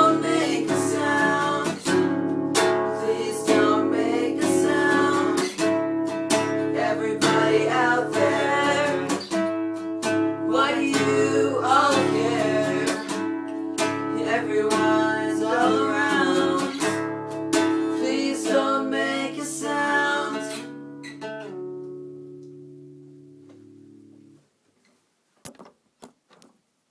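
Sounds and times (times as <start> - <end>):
person singing: 0.0 - 2.2, 2.9 - 5.7, 6.3 - 9.4, 10.4 - 17.1, 17.7 - 20.7
acoustic guitar strumming: 0.0 - 24.4.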